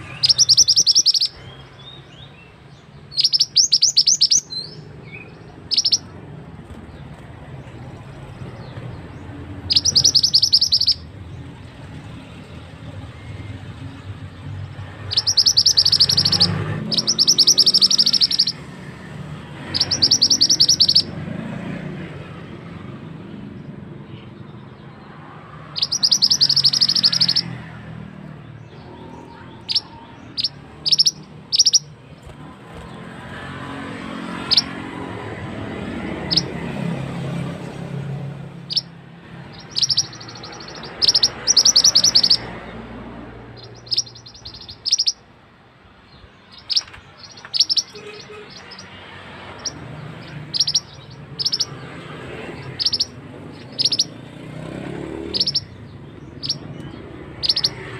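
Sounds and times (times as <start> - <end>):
bird trilling calls: 0.0 - 6.2, 8.0 - 11.5, 14.8 - 21.2, 25.6 - 27.8, 28.5 - 33.0, 34.3 - 34.9, 36.2 - 36.6, 38.4 - 42.8, 43.5 - 45.3, 46.4 - 57.9
sharp high bird chirps: 0.0 - 6.3, 7.9 - 12.6, 13.2 - 21.2, 25.6 - 33.4, 34.2 - 35.0, 36.2 - 36.8, 38.3 - 42.8, 43.4 - 45.4, 46.0 - 57.9.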